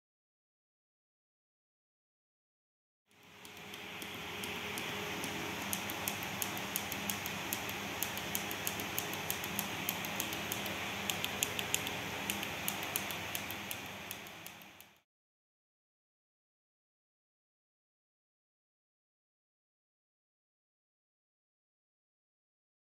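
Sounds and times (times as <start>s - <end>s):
room noise hiss: 3.1s - 15.0s
push-button switch clicks: 3.4s - 15.0s.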